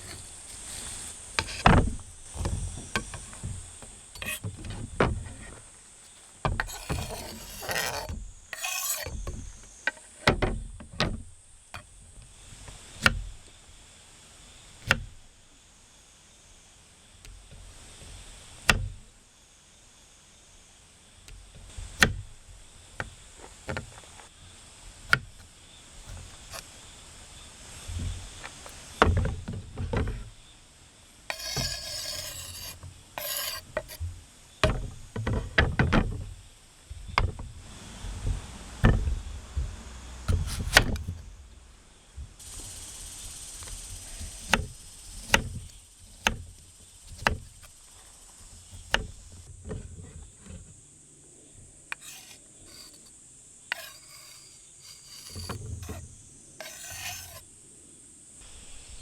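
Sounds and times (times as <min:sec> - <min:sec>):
scraping and rubbing: 0:00.0 - 0:09.6, 0:31.3 - 0:34.1, 0:40.3 - 0:41.3, 0:51.9 - 0:53.1, 0:53.7 - 0:57.4.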